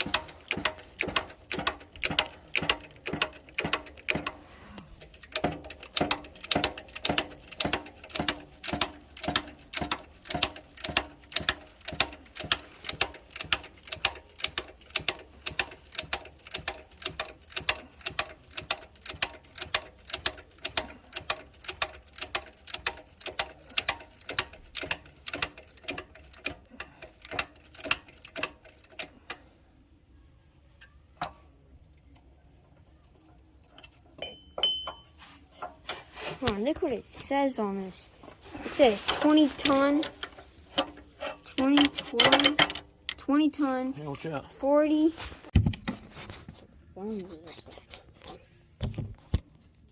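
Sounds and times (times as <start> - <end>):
rapid mechanical clicking: 0.0 - 29.4, 31.1 - 34.2.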